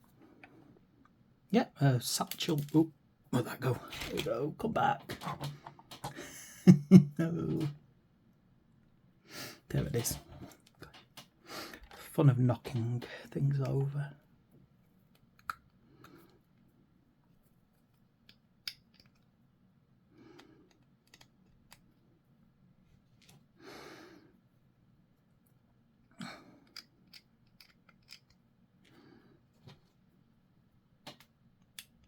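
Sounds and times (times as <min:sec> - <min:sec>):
plastic parts rustling: 0:02.2 - 0:02.9, 0:03.5 - 0:06.2.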